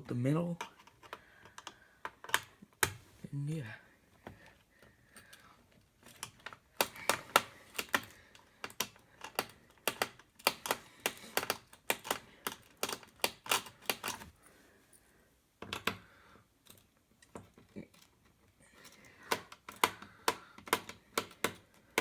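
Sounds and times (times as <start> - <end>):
screwdriver clicking on screws: 0.6 - 3.0, 6.0 - 14.4, 18.8 - 22.0.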